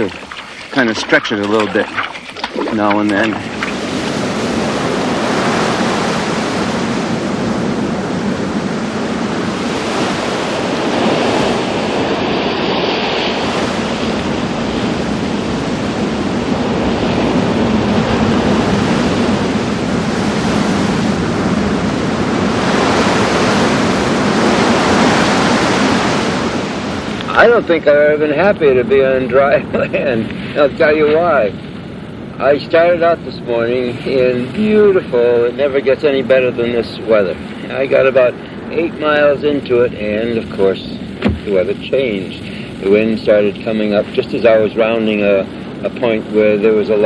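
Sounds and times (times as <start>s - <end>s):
waves and surf washing: 0.0s - 47.0s
wind buffeting microphone: 0.0s - 47.0s.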